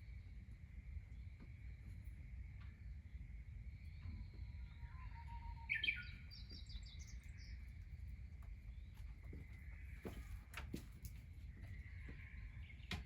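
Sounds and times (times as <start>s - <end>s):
bird chirping: 3.8s - 7.9s.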